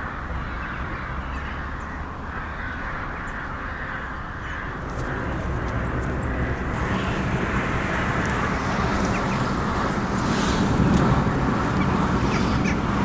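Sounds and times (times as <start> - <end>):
road and wind noise: 0.0 - 13.0
vehicle engine running: 4.6 - 13.0.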